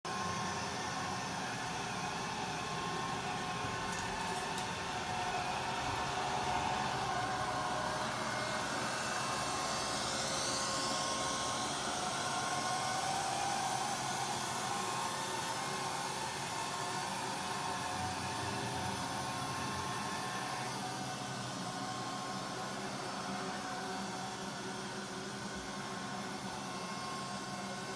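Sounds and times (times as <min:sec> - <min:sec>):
robot vacuum whirring: 0:00.1 - 0:22.4.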